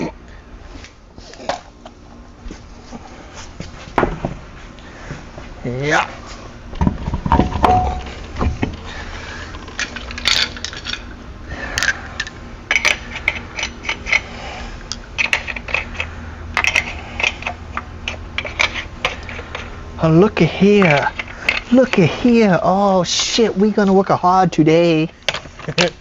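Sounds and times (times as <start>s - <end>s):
metal tools clinking: 7.3s - 8.6s, 9.5s - 11.1s, 14.9s - 19.7s, 20.6s - 22.4s.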